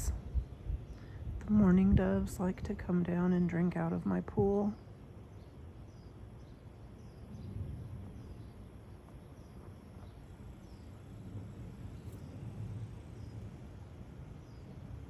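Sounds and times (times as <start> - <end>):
outdoor background rumble: 0.0 - 15.0.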